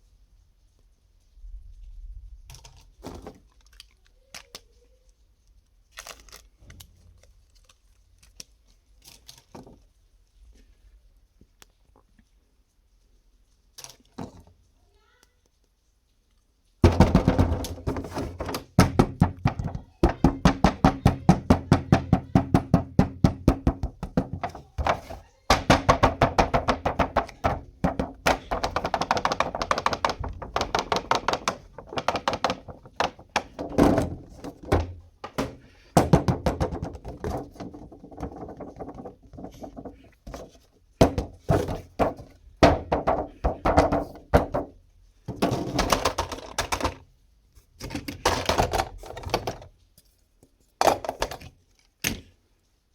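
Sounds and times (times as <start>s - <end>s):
plastic toys clicking: 2.5s - 5.0s, 16.9s - 22.8s, 23.6s - 40.5s, 45.4s - 47.1s.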